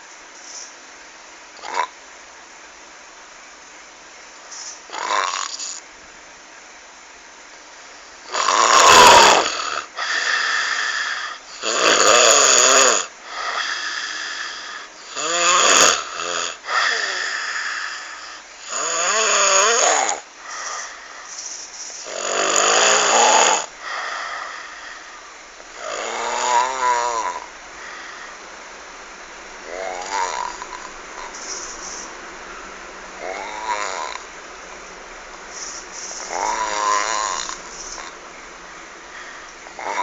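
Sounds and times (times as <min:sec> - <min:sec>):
person snoring loudly: 0:01.6 - 0:02.0, 0:04.9 - 0:05.8, 0:08.3 - 0:21.2, 0:22.0 - 0:28.4, 0:29.6 - 0:31.6, 0:33.2 - 0:34.3, 0:35.6 - 0:38.2, 0:39.1 - 0:40.0
soft breaths: 0:13.2 - 0:15.1, 0:16.6 - 0:18.6, 0:20.3 - 0:22.2, 0:23.6 - 0:40.0.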